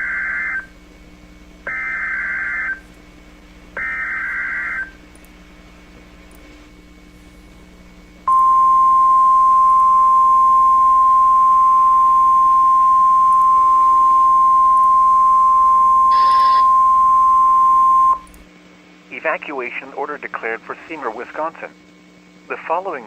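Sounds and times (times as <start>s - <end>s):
steady loud high alarm tone: 0.0s - 0.7s, 1.6s - 2.8s, 3.8s - 5.0s, 8.3s - 18.3s
faint hum: 0.0s - 23.0s.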